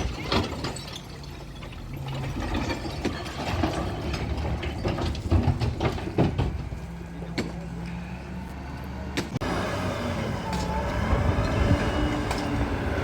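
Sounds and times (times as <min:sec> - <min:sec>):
metal clanks and knocks: 0:00.0 - 0:07.6.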